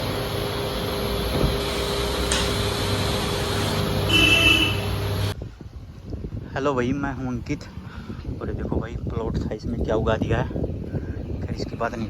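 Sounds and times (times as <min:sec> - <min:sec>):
machine running hum: 0:00.0 - 0:05.4.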